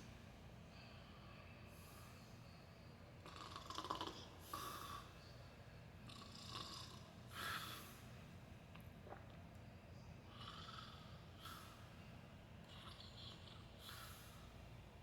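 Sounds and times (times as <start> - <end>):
person snoring quietly: 3.2 - 5.2, 6.1 - 7.8, 10.3 - 11.8.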